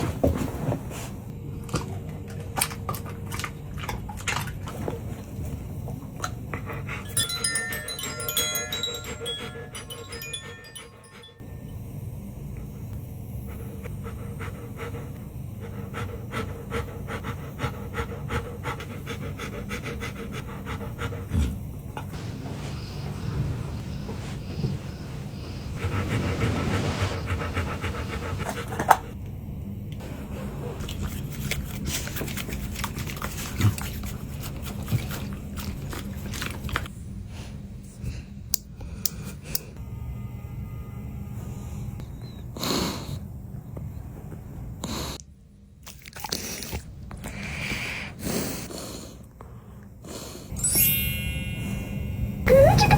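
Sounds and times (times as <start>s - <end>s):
dog heavy breathing: 5.0s - 11.4s, 13.2s - 29.2s, 47.2s - 50.6s.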